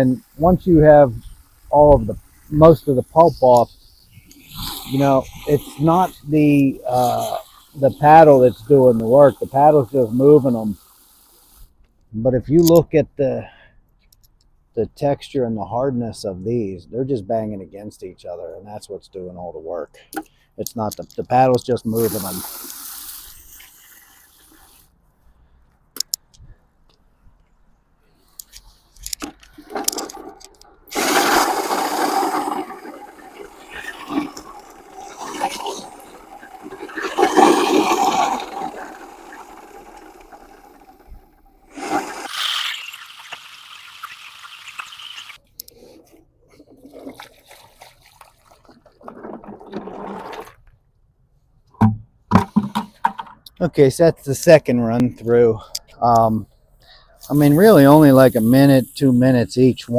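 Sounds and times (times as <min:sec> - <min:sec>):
water sloshing and trickling: 0:29.5 - 0:45.4, 0:46.4 - 0:50.7
water rushing and splashing: 0:30.9 - 0:41.0, 0:41.7 - 0:45.4
sharp clicks and knocks: 0:51.7 - 0:53.6.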